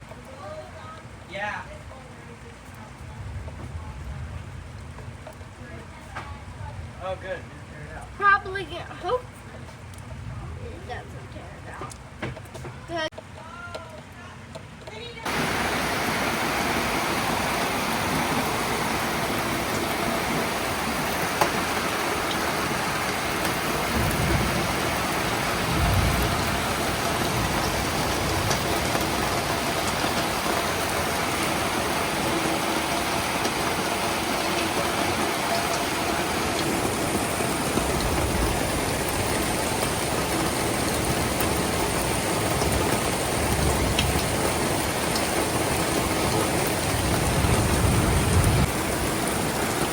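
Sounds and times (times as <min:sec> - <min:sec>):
flooded creek rushing: 0:15.2 - 0:49.9.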